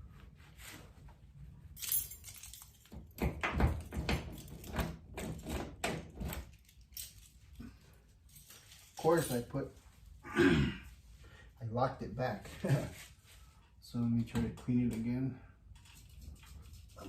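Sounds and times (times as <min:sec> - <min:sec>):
key clicking and rattling in lock: 0:01.8 - 0:05.5, 0:06.1 - 0:07.6, 0:15.7 - 0:17.0.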